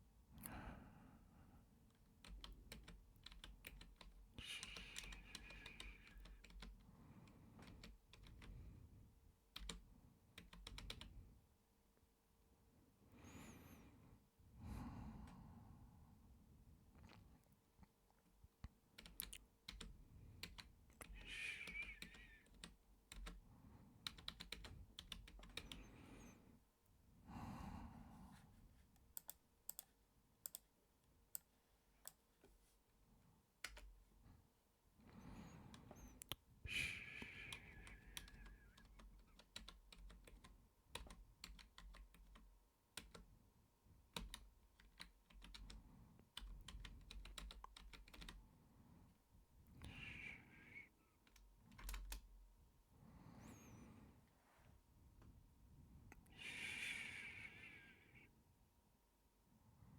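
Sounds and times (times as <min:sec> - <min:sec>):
short breathy sounds: 0:04.4 - 0:07.6, 0:21.0 - 0:22.5, 0:35.0 - 0:38.9, 0:49.7 - 0:51.2, 0:53.1 - 0:54.6, 0:55.9 - 0:58.4.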